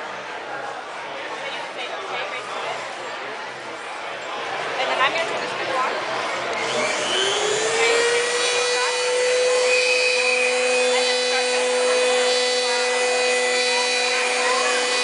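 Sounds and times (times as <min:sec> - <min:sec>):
lower cutting tone: 0:06.5 - 0:15.0
spindle motor whine: 0:06.5 - 0:15.0.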